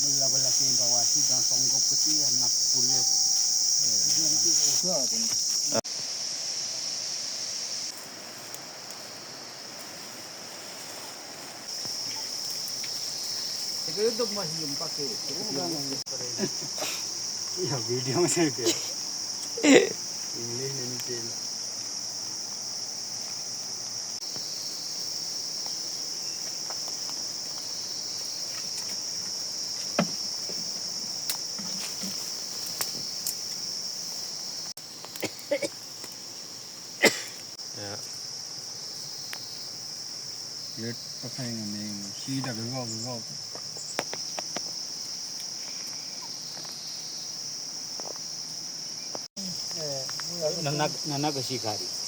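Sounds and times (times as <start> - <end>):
crickets chirring: 0.0 - 52.0
insects droning: 0.0 - 52.0
sharp knocks: 29.9 - 30.2.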